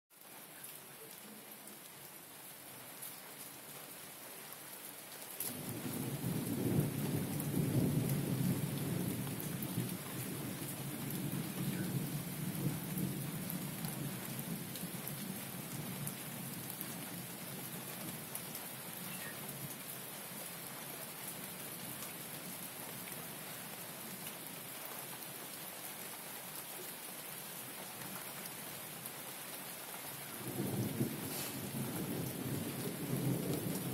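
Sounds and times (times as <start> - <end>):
steady rain hiss: 0.1 - 33.9
low roll of thunder: 5.5 - 15.3, 30.4 - 33.9.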